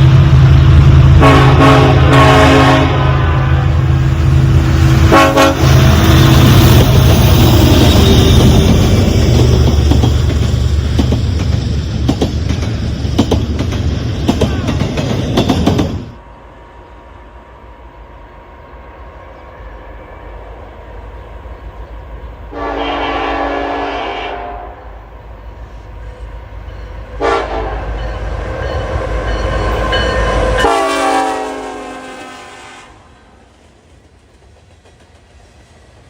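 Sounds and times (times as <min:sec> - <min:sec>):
train rumble: 0:00.0 - 0:36.0
locomotive air horn: 0:01.1 - 0:04.1, 0:04.8 - 0:06.6, 0:22.5 - 0:25.0, 0:27.2 - 0:28.0, 0:29.6 - 0:33.3.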